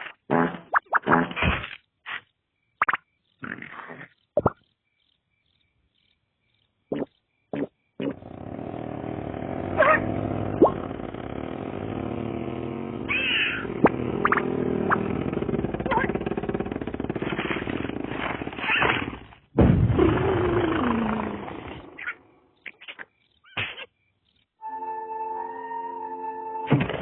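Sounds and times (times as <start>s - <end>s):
rattling buzz: 8.0s - 22.0s
cartoon squeaks and whistles: 13.1s - 13.7s, 22.0s - 24.0s.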